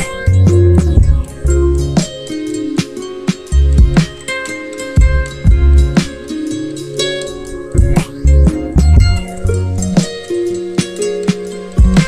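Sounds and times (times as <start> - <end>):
plucked string instrument: 0.0 - 12.0
drum hits: 3.8 - 4.2, 5.0 - 6.1, 7.8 - 9.3.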